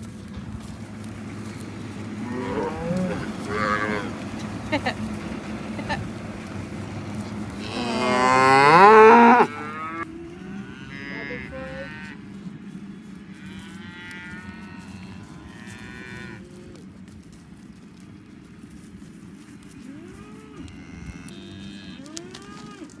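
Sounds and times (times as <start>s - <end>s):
cattle mooing faintly: 0.9s - 16.9s
cow mooing loudly: 2.1s - 4.9s, 7.5s - 12.2s.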